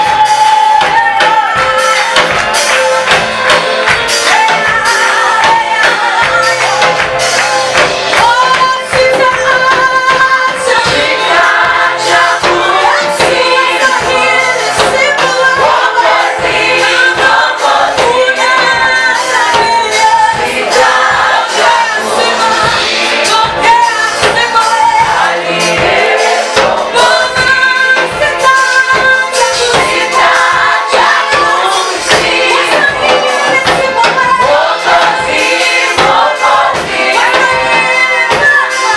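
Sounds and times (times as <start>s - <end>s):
steady percussive beat: 0.0s - 38.9s
choir singing in harmony: 3.8s - 38.9s.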